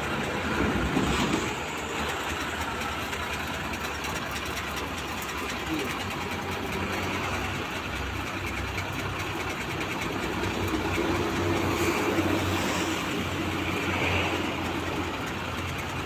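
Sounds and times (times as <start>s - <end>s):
truck engine idling: 0.0s - 16.0s.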